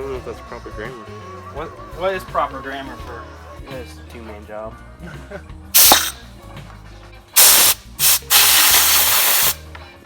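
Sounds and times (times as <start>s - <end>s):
spray hissing in bursts: 5.8s - 6.1s, 7.4s - 9.6s.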